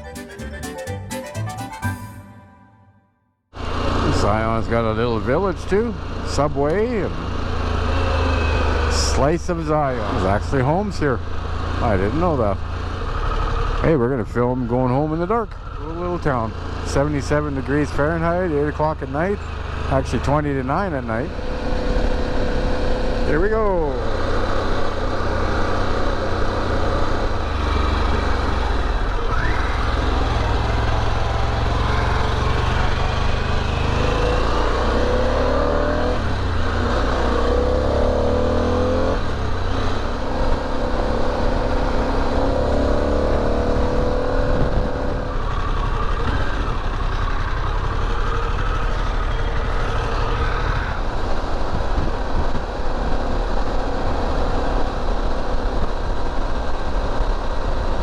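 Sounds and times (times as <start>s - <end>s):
motorcycle engine running: 3.6s - 35.4s, 36.1s - 58.0s
wind rush on microphone: 44.4s - 45.4s, 51.0s - 53.4s.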